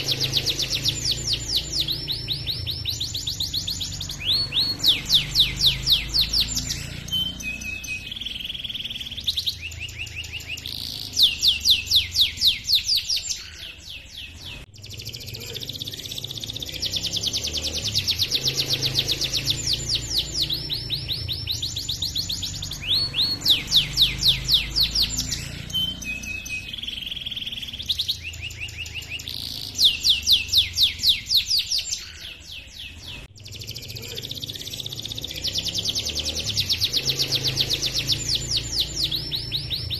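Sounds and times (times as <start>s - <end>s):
canary singing with rolling trills: 0.0s - 39.9s.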